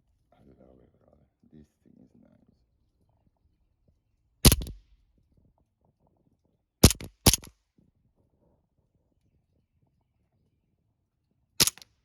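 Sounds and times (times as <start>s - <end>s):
air pistol shots cracking: 4.4s - 4.8s, 6.8s - 7.5s, 11.6s - 11.8s.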